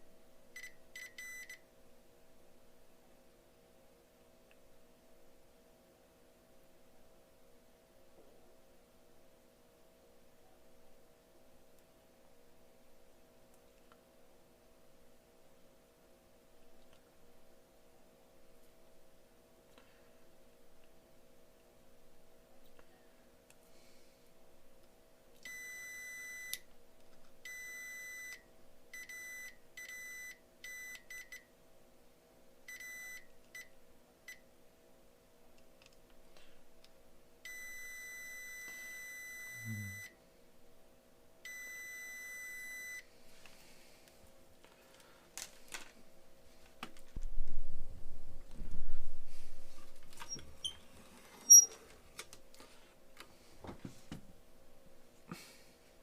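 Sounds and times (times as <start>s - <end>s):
multimeter continuity beeps: 0.6s - 1.6s, 25.4s - 26.6s, 27.4s - 31.5s, 32.7s - 33.7s, 37.4s - 40.2s, 41.4s - 43.1s.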